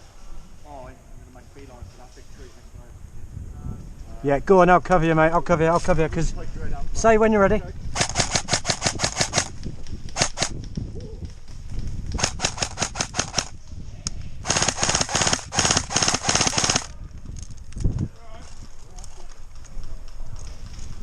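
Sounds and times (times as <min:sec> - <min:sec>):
airsoft rifle full-auto bursts: 0:08.0 - 0:09.6, 0:10.2 - 0:10.5, 0:12.2 - 0:13.5, 0:14.4 - 0:16.9.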